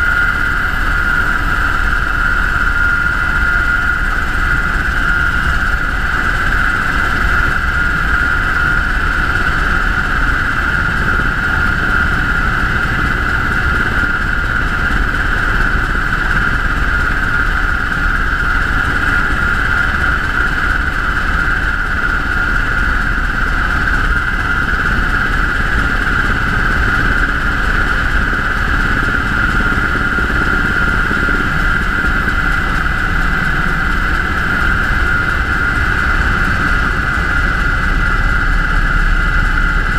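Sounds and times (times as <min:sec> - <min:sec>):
helicopter drone and whine: 0:00.0 - 0:39.9.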